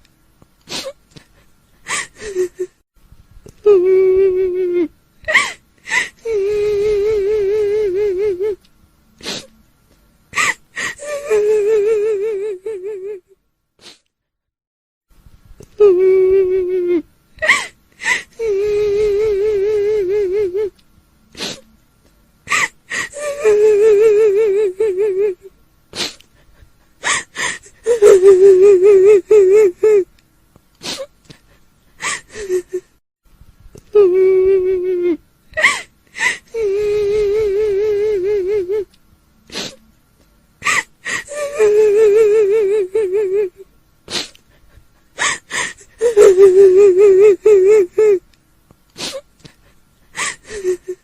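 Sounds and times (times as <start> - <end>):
woman wailing: 10.4 - 13.2, 22.5 - 25.5, 27.0 - 30.0, 34.0 - 35.9, 36.6 - 38.9, 40.6 - 43.6, 45.2 - 48.2
sharp gasping breaths: 21.3 - 21.7, 26.0 - 27.9, 39.5 - 39.8, 44.1 - 46.1, 49.0 - 50.9.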